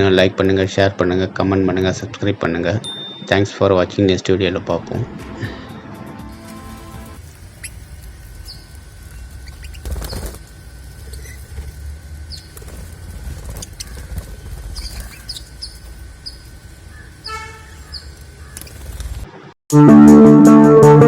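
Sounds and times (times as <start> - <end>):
birds flapping wings in water: 6.6 - 16.0, 17.9 - 19.3
high bird chirps: 7.5 - 10.3, 14.7 - 18.8.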